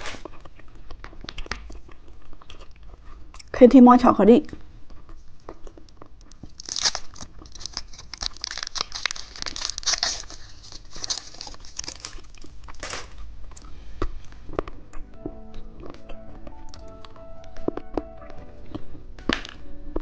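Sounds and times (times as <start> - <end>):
plastic wrapper crinkling: 5.0 - 13.6
light music: 14.2 - 20.0.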